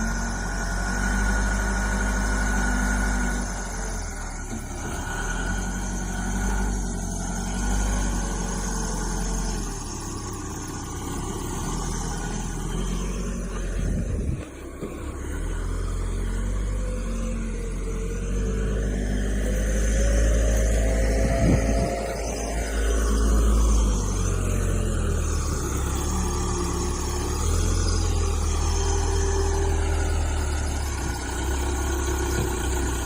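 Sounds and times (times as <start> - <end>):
diesel engine running under load: 0.0 - 33.0.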